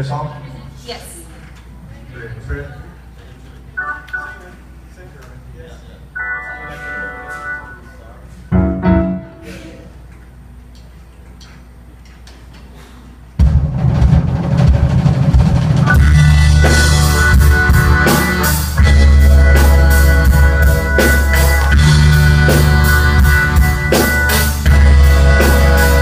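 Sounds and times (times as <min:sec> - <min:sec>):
steady high note: 0:06.2 - 0:09.9
band music with drums and bass: 0:08.4 - 0:09.6, 0:13.4 - 0:26.0.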